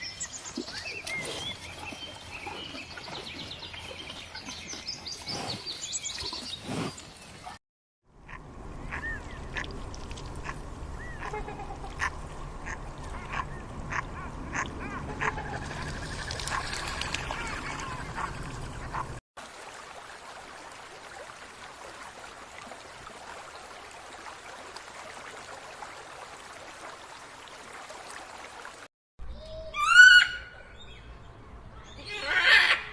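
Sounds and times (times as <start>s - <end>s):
ducks quacking: 8.2s - 9.7s, 10.4s - 19.2s.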